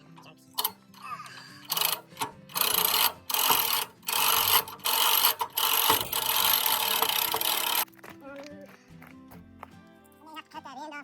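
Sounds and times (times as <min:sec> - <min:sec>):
winch ratcheting: 0:00.6 - 0:07.8.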